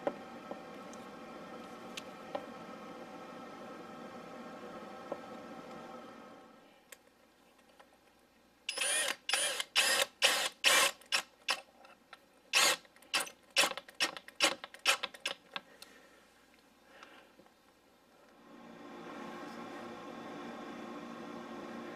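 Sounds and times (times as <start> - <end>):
sharp clicks and scraping snaps: 10.9 - 15.9.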